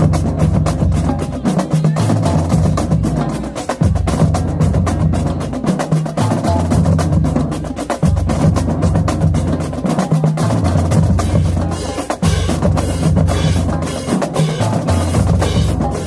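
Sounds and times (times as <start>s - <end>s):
rapid snare drum strokes: 0.0s - 16.0s.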